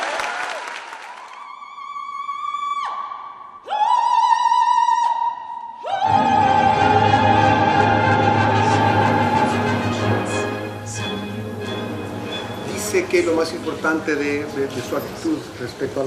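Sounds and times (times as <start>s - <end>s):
operatic soprano singing: 1.5s - 13.4s
orchestra playing: 6.1s - 15.5s.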